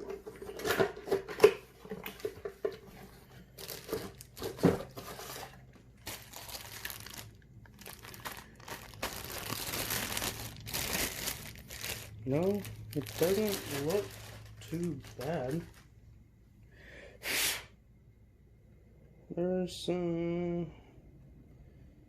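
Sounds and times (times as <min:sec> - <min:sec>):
packaging crinkling and rustling: 0:00.0 - 0:16.0.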